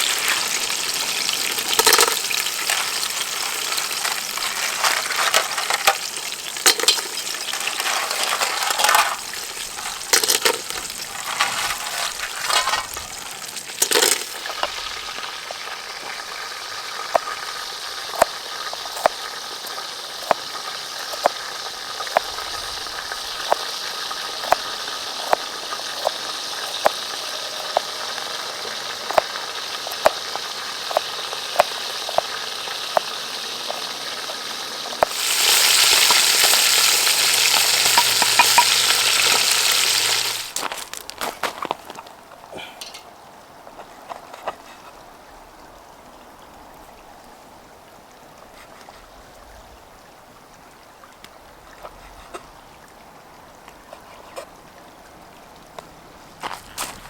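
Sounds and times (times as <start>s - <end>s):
food sizzling in hot oil: 0.0s - 41.0s
stirring knocks: 1.7s - 14.8s, 35.0s - 40.9s.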